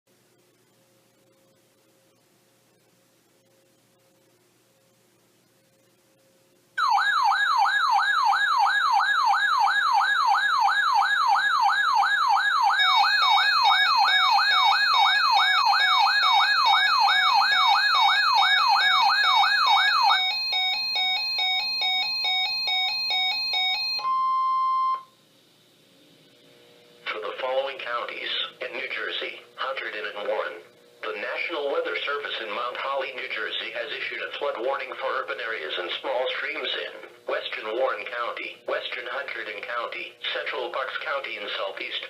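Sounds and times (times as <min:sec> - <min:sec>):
electronic alert warble: 0:11.8 - 0:25.1
short steady beep: 0:23.1 - 0:25.2.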